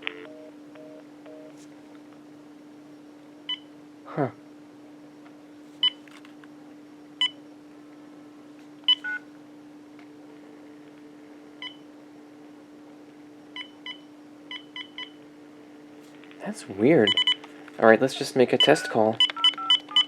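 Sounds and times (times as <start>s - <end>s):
steady line hum: 0.0s - 19.1s
phone key-press beeps: 17.1s - 17.4s, 18.6s - 20.0s.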